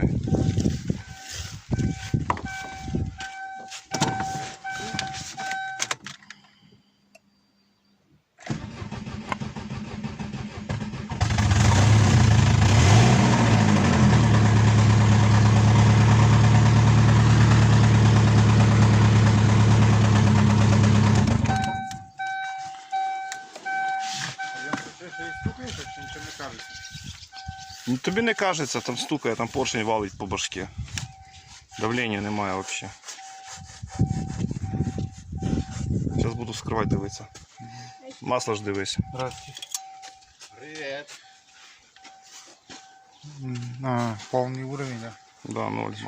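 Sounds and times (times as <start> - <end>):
repeating beep: 0.0 - 7.0, 21.4 - 29.2, 33.2 - 40.4
car engine knocking: 13.8 - 21.9.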